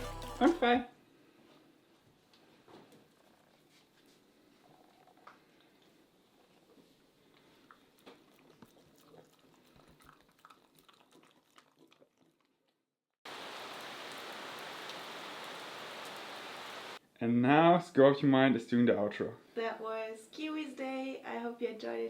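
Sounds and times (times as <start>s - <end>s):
heavy rain hissing: 13.3s - 17.0s.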